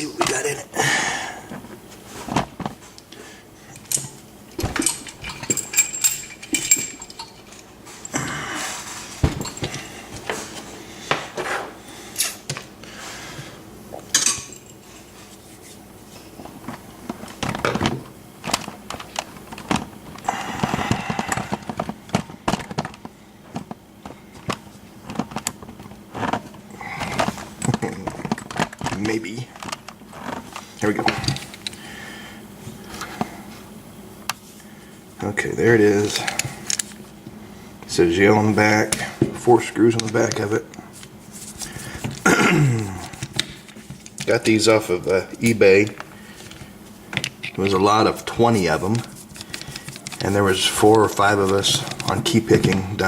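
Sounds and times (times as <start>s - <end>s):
metal clinks and clicks: 4.8s - 7.6s.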